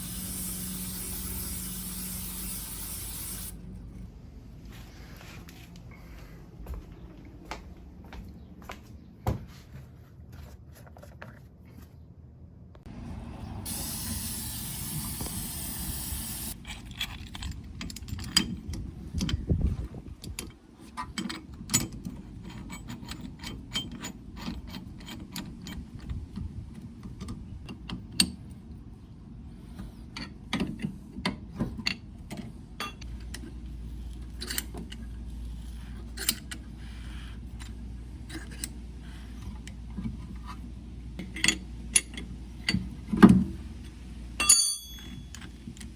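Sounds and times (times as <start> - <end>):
steady hiss: 0.0 - 3.6, 13.7 - 16.6
hand tools clanking on metal: 44.4 - 45.5.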